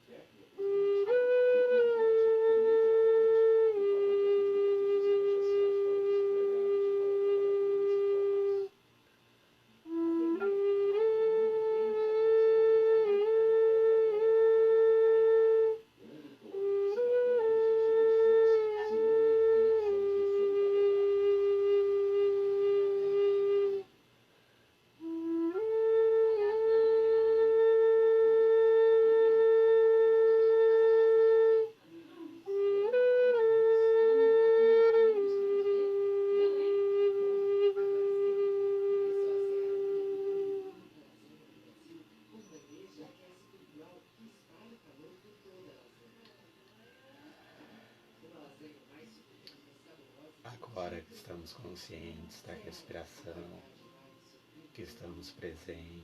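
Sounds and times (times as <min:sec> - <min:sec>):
flute slow melody: 0:00.0 - 0:08.8, 0:09.7 - 0:24.1, 0:25.0 - 0:41.4.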